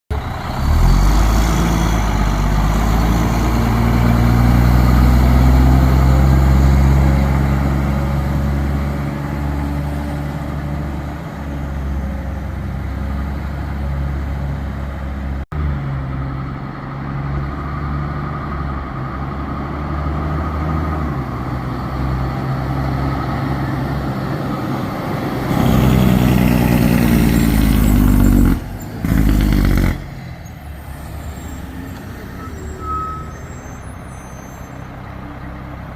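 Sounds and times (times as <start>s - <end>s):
diesel engine running: 0.1s - 18.0s.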